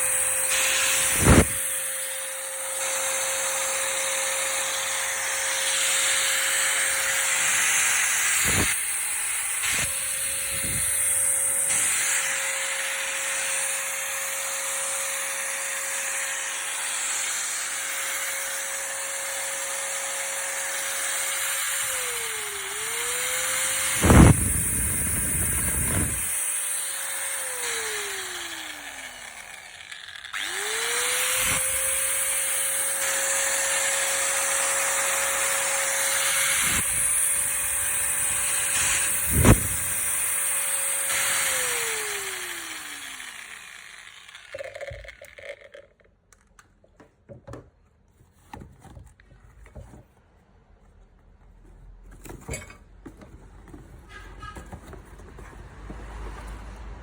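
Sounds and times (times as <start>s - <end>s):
electric power tool motor running: 0.0s - 46.0s.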